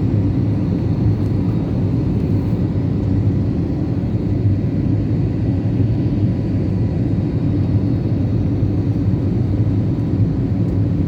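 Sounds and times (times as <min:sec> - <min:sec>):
airliner cabin engine rumble: 0:00.0 - 0:11.0
faint steady hum: 0:00.0 - 0:11.0.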